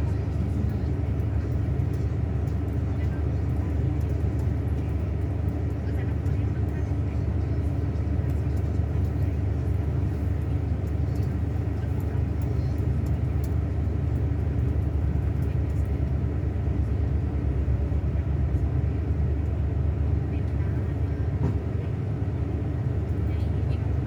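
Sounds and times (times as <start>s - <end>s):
diesel engine droning: 9.0s - 24.0s.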